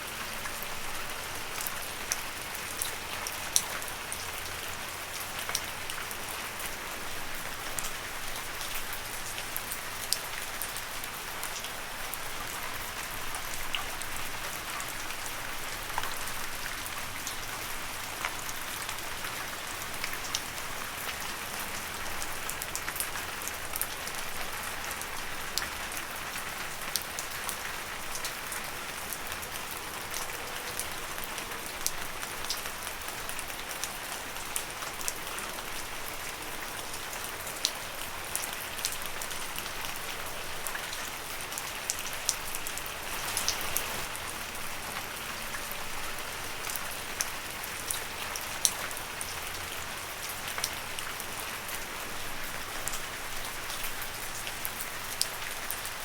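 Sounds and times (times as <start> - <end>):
rain falling on leaves: 0.0 - 56.0.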